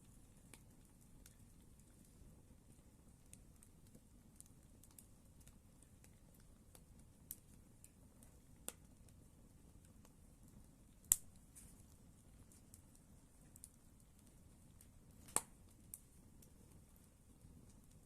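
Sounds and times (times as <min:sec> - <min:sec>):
campfire crackling: 0:00.0 - 0:18.0
low rumble of flames: 0:00.0 - 0:18.0
fire pops: 0:11.0 - 0:13.0, 0:14.8 - 0:16.5.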